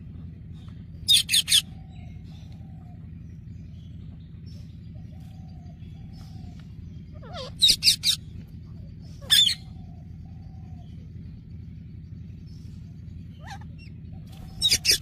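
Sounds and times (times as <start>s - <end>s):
steady low hum: 0.0s - 15.0s
parrots squawking: 1.1s - 1.8s, 7.1s - 8.3s, 9.2s - 9.8s, 13.4s - 15.0s.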